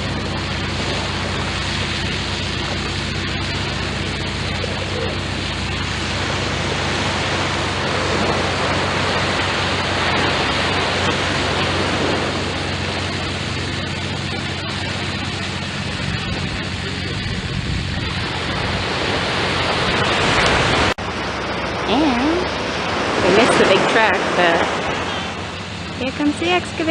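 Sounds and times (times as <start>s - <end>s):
construction equipment engine: 0.0s - 26.9s
surf: 0.0s - 26.9s
wind: 0.0s - 26.9s.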